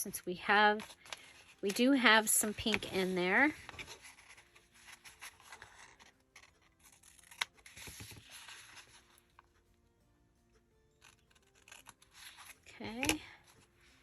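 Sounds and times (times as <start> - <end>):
paper and tape handled: 0.6 - 9.5, 10.9 - 14.0.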